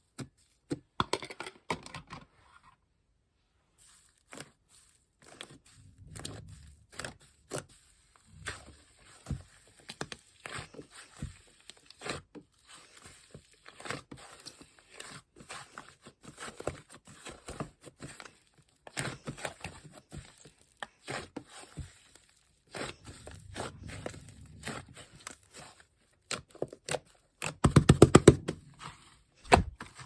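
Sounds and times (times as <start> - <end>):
slime squishing: 4.2 - 14.7, 20.2 - 29.8.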